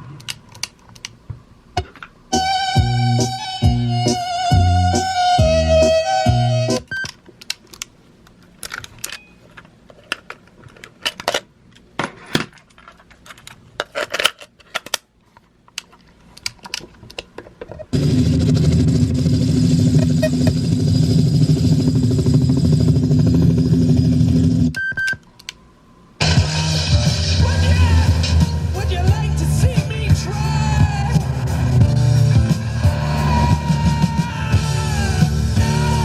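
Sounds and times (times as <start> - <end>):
music: 2.3 - 6.8, 26.2 - 36.0
steady loud noise: 18.0 - 24.8, 25.8 - 36.0.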